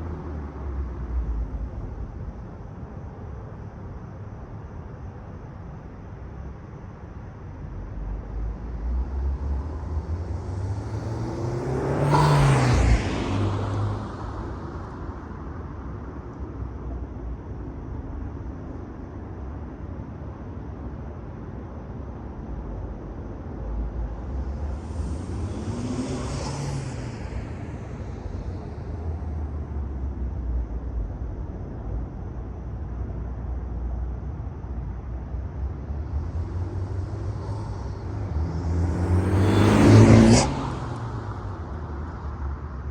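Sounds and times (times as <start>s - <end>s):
car engine low rumble: 0.0s - 42.9s
car engine accelerating: 9.0s - 15.0s, 23.7s - 30.3s, 35.1s - 42.9s.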